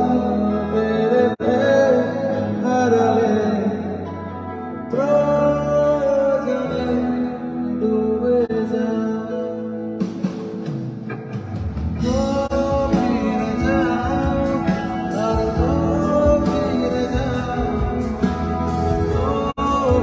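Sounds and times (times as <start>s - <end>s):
drums: 0.0s - 3.9s, 5.0s - 20.0s
man singing: 0.0s - 10.4s, 12.0s - 20.0s
bass: 0.0s - 20.0s
guitar: 0.0s - 20.0s.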